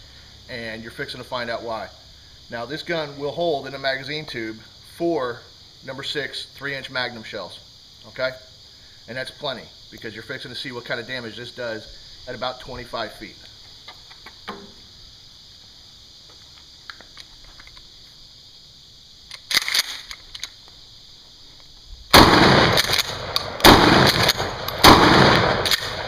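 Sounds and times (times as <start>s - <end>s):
shotgun shots: 22.1s - 26.0s.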